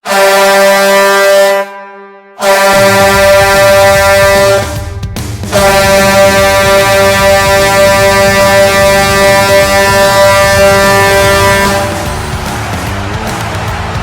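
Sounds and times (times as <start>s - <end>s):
goal horn blasts: 0.0s - 14.0s
music with steady low beat: 2.8s - 14.0s.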